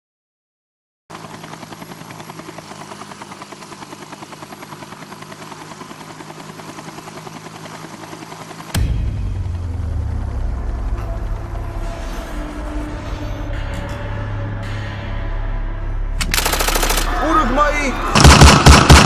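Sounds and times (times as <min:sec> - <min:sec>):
machine drone with pulsing beat: 0:07.1 - 0:19.0
loud deep rumble: 0:08.8 - 0:19.0.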